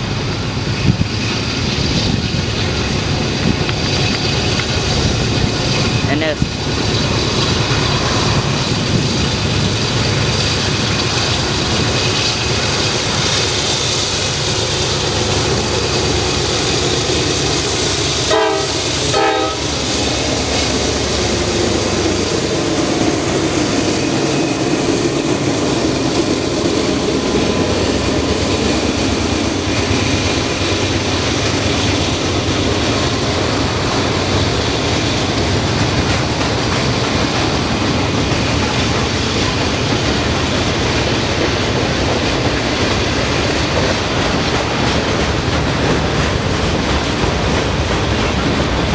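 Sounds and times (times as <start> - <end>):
train wheels rumbling on rail: 0.0 - 48.9
train horn: 18.2 - 19.9.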